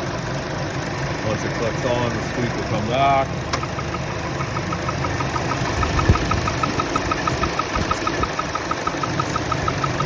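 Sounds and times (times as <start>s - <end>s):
car engine idling: 0.0s - 10.0s
fast high-pitched squeak: 4.5s - 10.0s.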